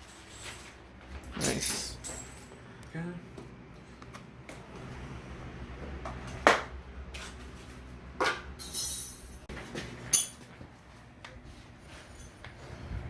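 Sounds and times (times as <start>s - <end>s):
metal tools clinking: 0.0s - 2.6s, 8.6s - 9.5s, 10.1s - 10.4s, 11.8s - 12.5s.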